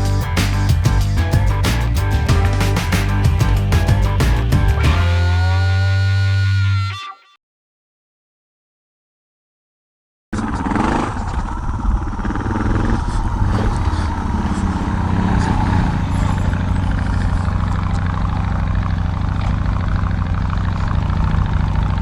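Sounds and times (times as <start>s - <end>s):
vehicle engine running: 0.0s - 6.6s.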